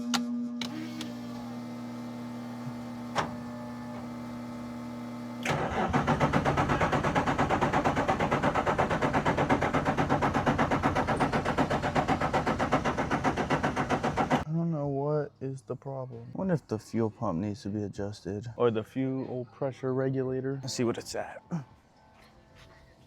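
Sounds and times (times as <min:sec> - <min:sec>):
car ignition hum: 0:00.6 - 0:14.4
starter cranking engine: 0:00.6 - 0:14.4.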